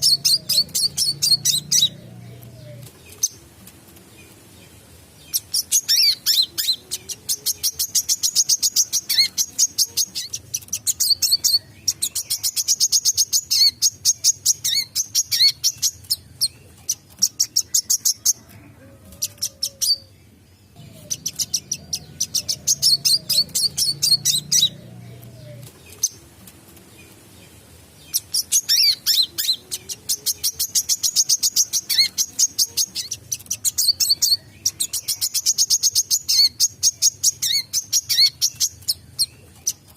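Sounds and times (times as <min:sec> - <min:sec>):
songbird singing rattling runs: 0:00.0 - 0:06.8, 0:20.7 - 0:29.4.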